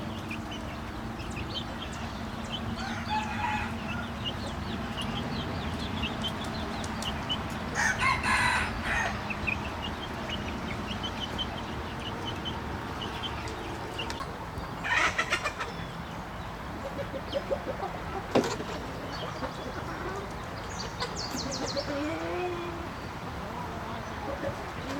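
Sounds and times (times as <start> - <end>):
chickens clucking and peeping: 0.0 - 24.9
chicken squawking: 14.8 - 15.7.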